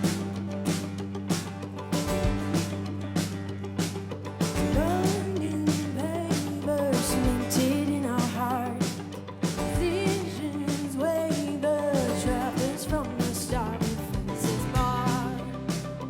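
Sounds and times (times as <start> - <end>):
bass line: 0.0 - 16.0
drum kit: 0.0 - 16.0
lead vocal singing: 4.8 - 15.7.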